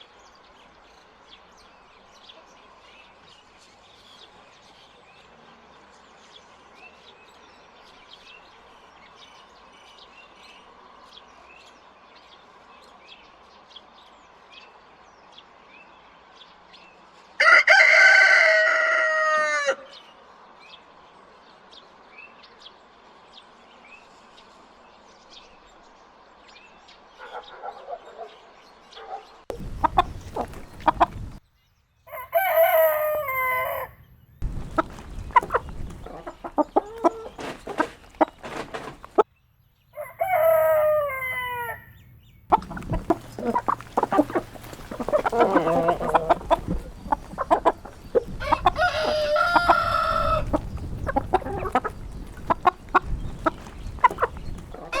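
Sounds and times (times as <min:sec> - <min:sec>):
rooster crowing: 0:17.4 - 0:20.0, 0:32.1 - 0:34.0, 0:40.0 - 0:42.0, 0:43.1 - 0:46.9, 0:48.4 - 0:50.6.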